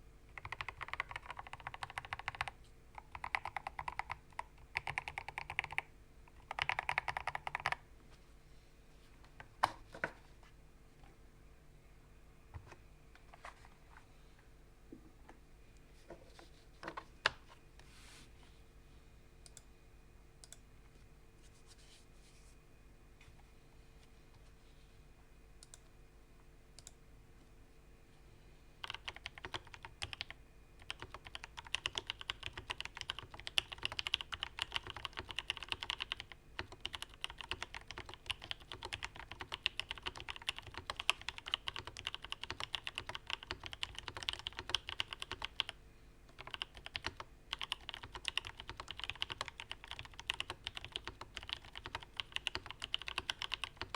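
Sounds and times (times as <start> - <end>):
typing on mechanical keyboard: 0.3 - 7.8, 28.8 - 53.9.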